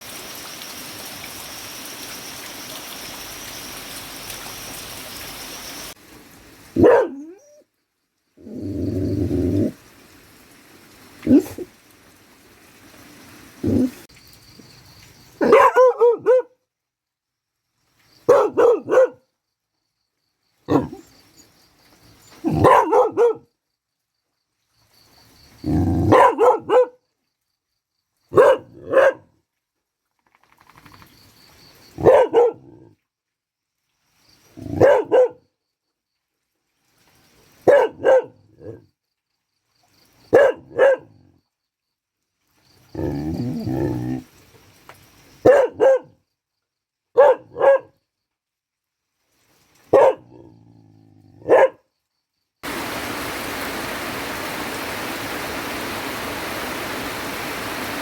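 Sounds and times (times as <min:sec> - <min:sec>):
dog barking: 0:06.8 - 0:07.6, 0:11.2 - 0:11.7, 0:15.4 - 0:16.6, 0:18.2 - 0:19.2, 0:20.7 - 0:21.0, 0:22.4 - 0:23.5, 0:25.9 - 0:27.0, 0:28.3 - 0:29.4, 0:32.0 - 0:32.9, 0:34.6 - 0:35.5, 0:37.6 - 0:38.8, 0:40.3 - 0:41.3, 0:45.4 - 0:46.2, 0:47.1 - 0:48.0, 0:49.9 - 0:50.4, 0:51.4 - 0:51.9.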